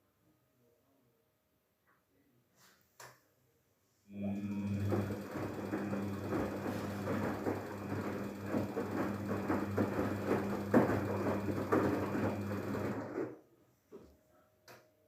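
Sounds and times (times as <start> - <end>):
washing machine hum: 4.1 - 13.4.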